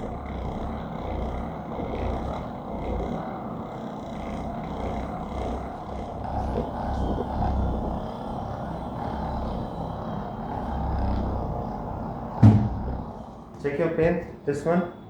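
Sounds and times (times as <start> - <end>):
low rumbling noise: 4.2 - 15.0.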